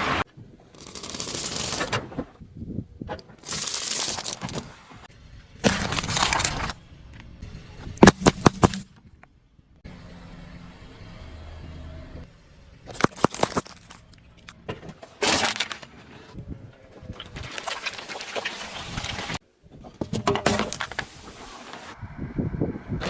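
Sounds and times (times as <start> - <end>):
objects crunching under car wheels: 3.0 - 9.3, 12.8 - 22.0.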